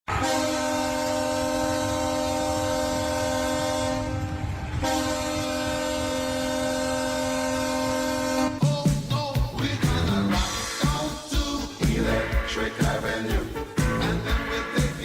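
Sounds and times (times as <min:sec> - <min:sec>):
hockey goal horn blast: 0:00.1 - 0:08.7
goal song: 0:04.8 - 0:15.0.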